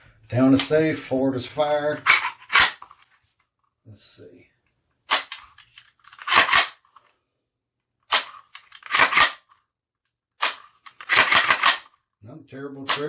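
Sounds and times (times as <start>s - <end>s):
rifle bolt clattering: 2.0s - 3.0s, 5.1s - 6.8s, 8.1s - 9.4s, 10.4s - 11.9s
trigger clicks: 5.1s - 6.8s, 8.1s - 9.4s, 10.4s - 11.9s.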